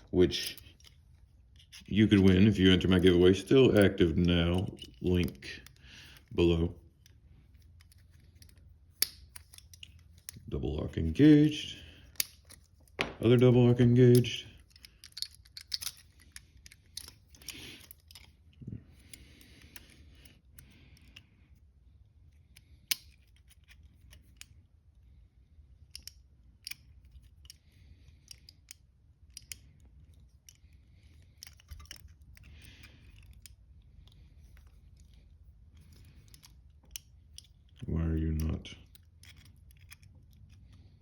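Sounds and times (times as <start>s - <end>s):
lock pick metal clicks: 7.7s - 10.4s, 11.6s - 18.4s, 22.5s - 24.6s, 25.9s - 41.0s.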